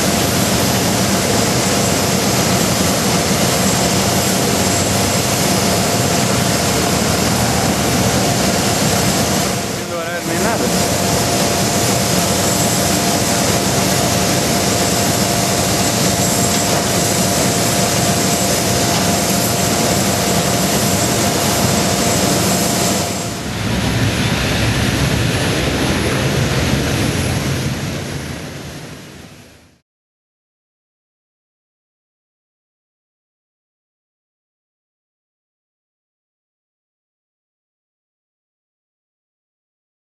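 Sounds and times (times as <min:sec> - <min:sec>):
jet engines rushing: 0:00.0 - 0:29.6
jet engine whine: 0:00.0 - 0:29.8.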